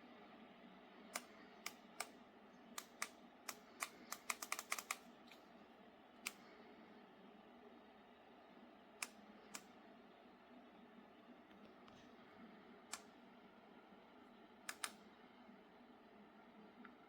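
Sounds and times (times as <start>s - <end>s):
sharp clicks: 2.8s - 5.4s, 14.7s - 15.0s.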